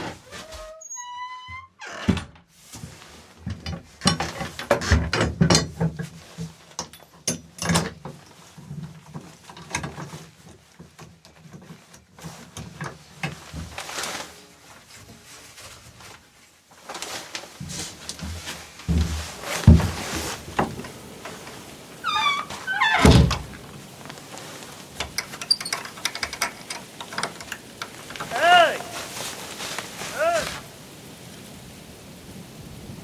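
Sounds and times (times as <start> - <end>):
brief pitched call: 28.3 - 29.3, 30.0 - 30.7.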